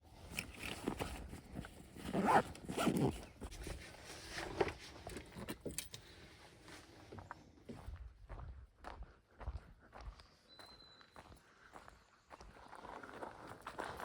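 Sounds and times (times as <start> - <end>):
handling clicks and rustles: 0.2 - 6.1.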